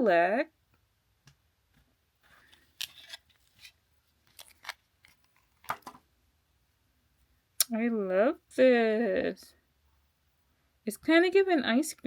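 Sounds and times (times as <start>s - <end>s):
packaging snips and crinkles: 2.4s - 5.8s.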